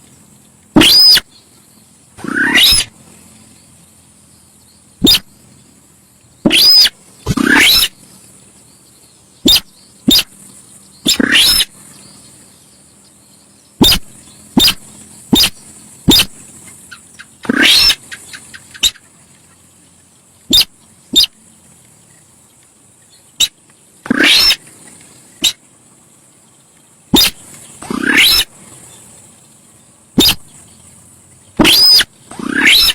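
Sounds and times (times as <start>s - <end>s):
steady high hiss: 0.0s - 32.9s
bird calling loudly: 0.8s - 1.4s, 2.2s - 3.0s, 5.0s - 5.4s, 6.4s - 8.1s, 9.4s - 10.4s, 11.0s - 12.0s, 13.8s - 19.1s, 20.5s - 21.4s, 23.3s - 24.8s, 25.4s - 25.6s, 27.1s - 28.6s, 30.2s - 30.6s, 31.5s - 32.9s.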